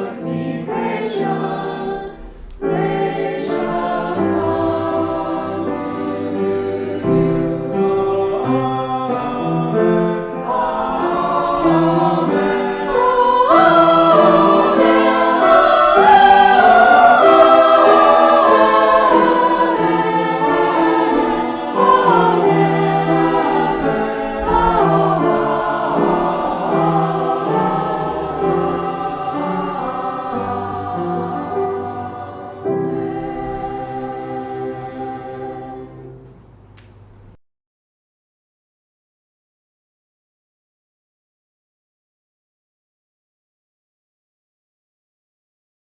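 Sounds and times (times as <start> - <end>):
choir singing a hymn: 0.0 - 36.6.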